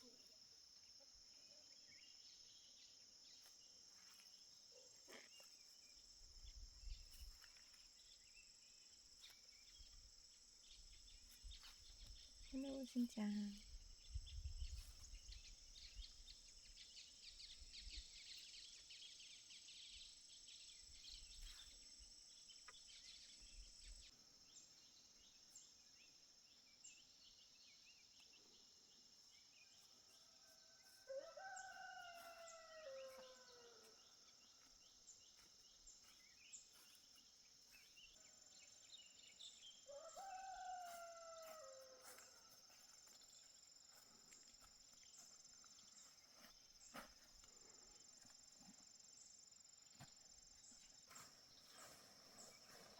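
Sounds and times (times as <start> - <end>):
high insect chorus: 0.0 - 52.9
rooster crowing faintly: 30.4 - 34.0, 39.9 - 42.6.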